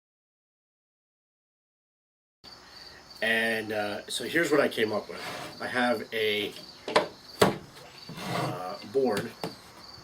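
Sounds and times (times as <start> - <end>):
faint background hiss: 2.5 - 10.0.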